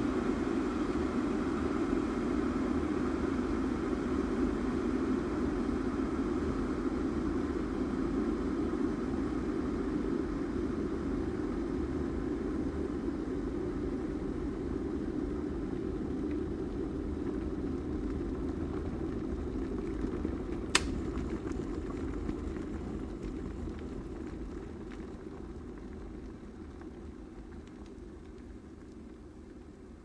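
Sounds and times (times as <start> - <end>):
electric kettle boiling: 0.0 - 30.0
kettle switch click: 20.8 - 21.0.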